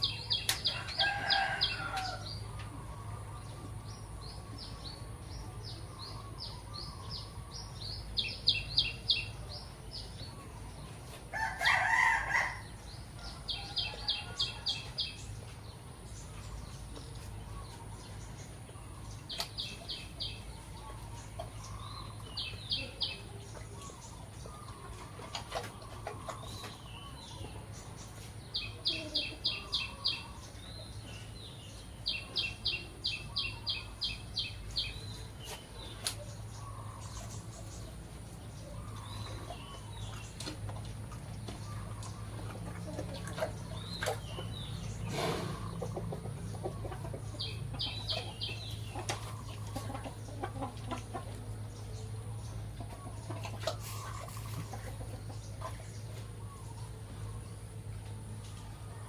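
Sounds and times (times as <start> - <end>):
rooster crowing: 0.7 - 2.3, 11.3 - 12.7.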